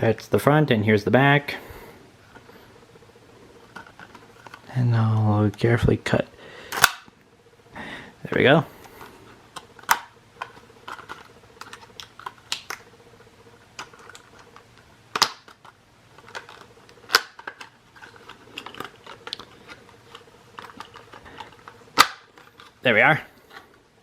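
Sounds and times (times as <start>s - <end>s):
sharp plastic snaps: 6.7s - 7.1s, 15.1s - 16.5s, 17.1s - 17.7s, 21.9s - 22.4s
plastic packaging clicks and crinkles: 8.8s - 12.8s, 13.8s - 22.8s.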